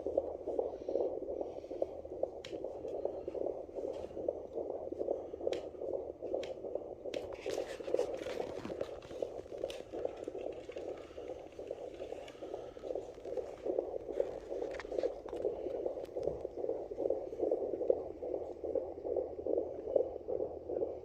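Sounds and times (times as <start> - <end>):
doppler heartbeat pulsing: 0.0 - 21.0
scratchy probe noise: 0.1 - 20.9
sharp clicks: 6.4 - 7.6.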